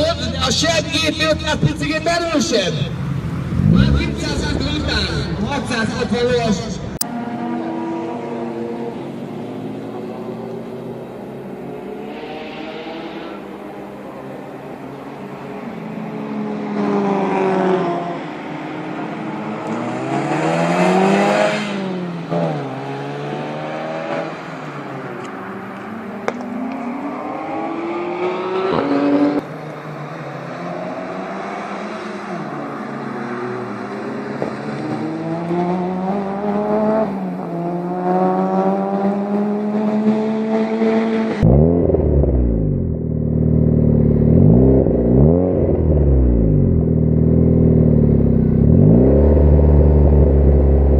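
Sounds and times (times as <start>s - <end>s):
car engine revving hard: 2.8s - 6.2s, 16.7s - 24.4s, 26.1s - 29.4s, 30.2s - 50.9s.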